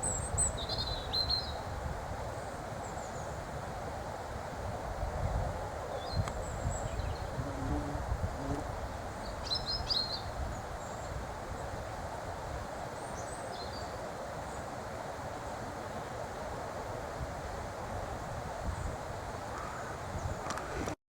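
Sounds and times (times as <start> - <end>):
wind rumble on microphone: 0.0 - 12.8, 16.9 - 21.0
outdoor hiss: 0.0 - 21.0.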